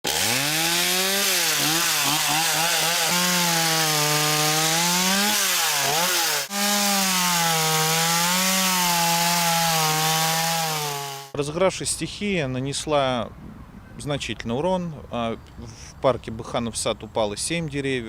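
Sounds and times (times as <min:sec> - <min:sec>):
chainsaw cutting wood: 0:00.0 - 0:11.4.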